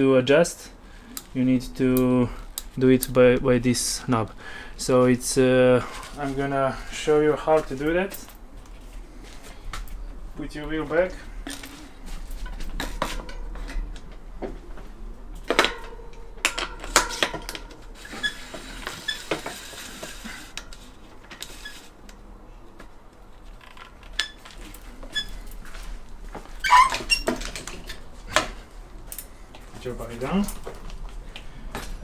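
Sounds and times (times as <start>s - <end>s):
metal clinks and knocks: 15.4s - 19.9s.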